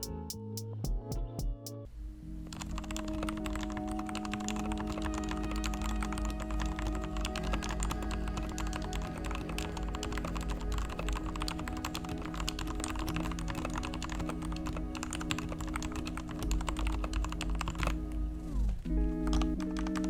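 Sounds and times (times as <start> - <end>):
background music: 0.0 - 20.0
mechanical keyboard clacks: 2.5 - 18.0.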